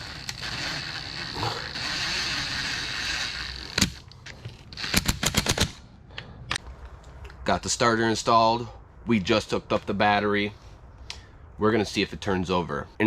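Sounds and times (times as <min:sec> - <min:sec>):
sharp clicks: 0:03.7 - 0:07.2.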